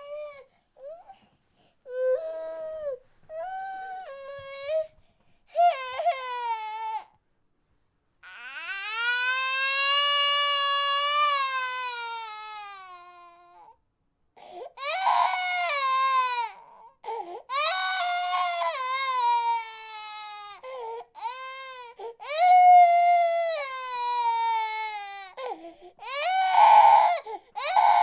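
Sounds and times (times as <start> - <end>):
baby crying: 14.8 - 16.8, 17.5 - 28.0.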